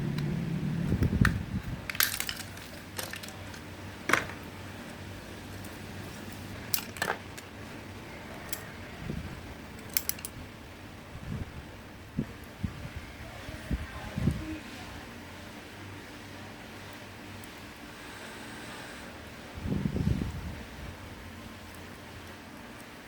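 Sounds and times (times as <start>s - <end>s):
low rumble: 0.0s - 2.1s
clicks of small hard parts: 1.2s - 4.4s, 9.8s - 10.4s.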